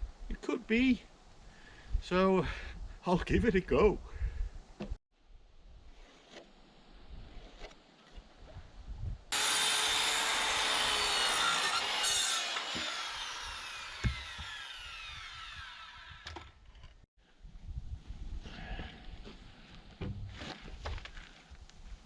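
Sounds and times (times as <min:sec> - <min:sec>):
power saw cutting lumber: 0:09.3 - 0:16.6
saw motor winding down: 0:09.3 - 0:16.6.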